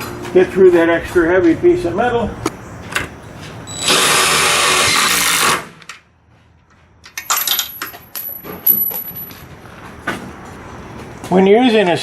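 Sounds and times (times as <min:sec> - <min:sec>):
power drill grinding through metal: 0:03.7 - 0:05.7
metallic clicks and rattles: 0:07.0 - 0:09.4.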